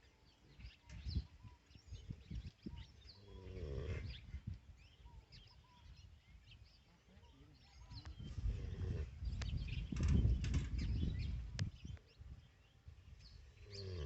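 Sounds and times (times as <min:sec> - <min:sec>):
small birds chirping: 0:00.0 - 0:14.0
bull snoring: 0:03.2 - 0:04.2, 0:08.4 - 0:09.3, 0:13.6 - 0:14.0.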